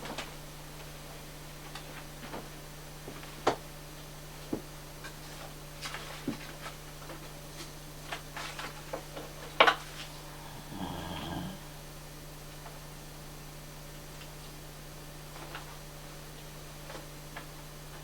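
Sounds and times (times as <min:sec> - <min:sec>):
dog snoring: 0:10.2 - 0:11.8.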